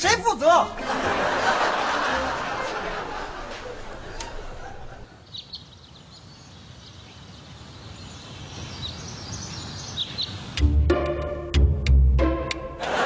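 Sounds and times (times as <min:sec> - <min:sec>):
low background noise: 0:00.0 - 0:10.6.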